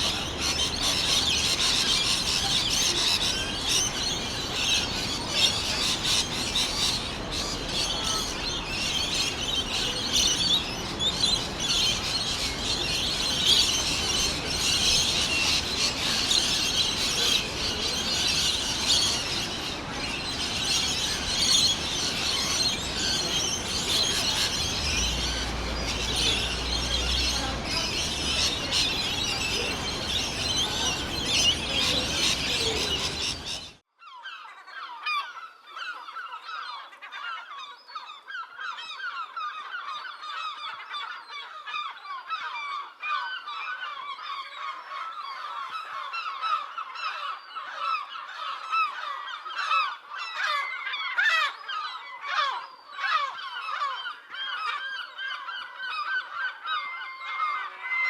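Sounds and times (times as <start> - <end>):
flock of geese honking: 0.0 - 33.8
hissy bird recording: 0.0 - 33.8.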